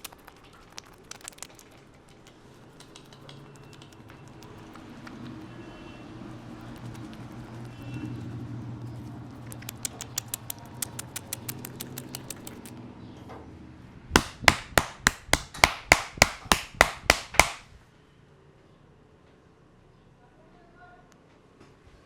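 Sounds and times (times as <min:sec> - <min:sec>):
light quick clicks: 0:09.4 - 0:12.8
sharp hand strikes: 0:14.2 - 0:17.7.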